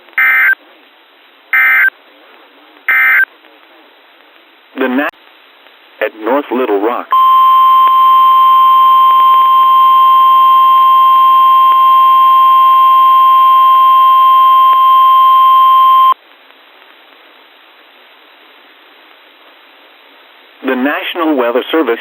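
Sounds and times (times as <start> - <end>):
faint radio hiss: 0.0 - 22.0
loud steady alarm beep: 7.1 - 16.2.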